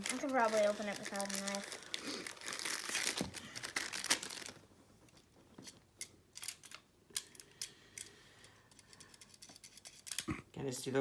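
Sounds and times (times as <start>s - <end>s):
packaging crinkling and tearing: 0.0s - 4.7s.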